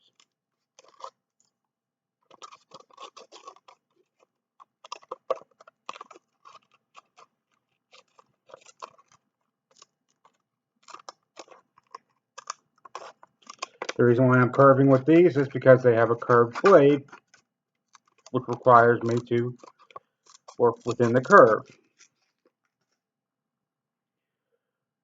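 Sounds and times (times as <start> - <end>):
scissors snipping sandpaper: 18.4 - 21.7.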